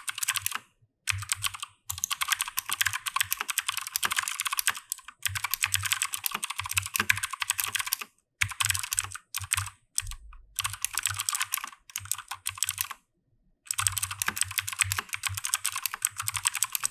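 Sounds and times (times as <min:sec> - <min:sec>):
mechanical keyboard typing: 0:00.0 - 0:13.0, 0:13.7 - 0:16.9.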